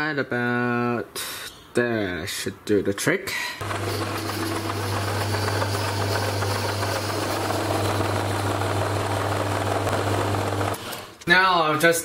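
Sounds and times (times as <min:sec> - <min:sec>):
lathe cutting wood: 0:03.6 - 0:11.1.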